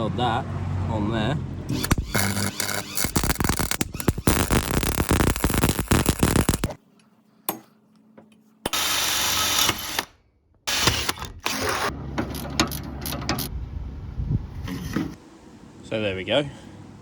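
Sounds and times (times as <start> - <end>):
welder arc crackling: 1.7 - 6.8.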